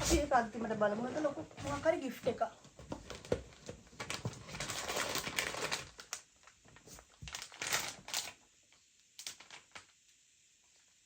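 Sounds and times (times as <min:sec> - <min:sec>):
plastic food wrappers crinkling: 0:02.9 - 0:10.0.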